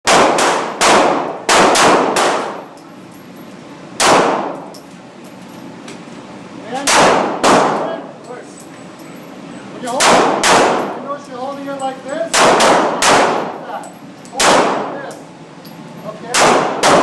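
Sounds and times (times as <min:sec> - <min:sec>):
gunshots ringing out: 0:00.1 - 0:02.6, 0:04.0 - 0:04.6, 0:06.8 - 0:07.9, 0:10.0 - 0:11.0, 0:12.3 - 0:13.6, 0:14.4 - 0:15.0, 0:16.2 - 0:17.0.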